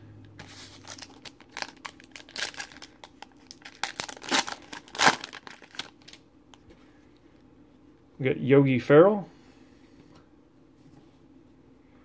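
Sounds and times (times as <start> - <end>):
plastic wrapper crinkling and tearing: 0.5 - 6.2.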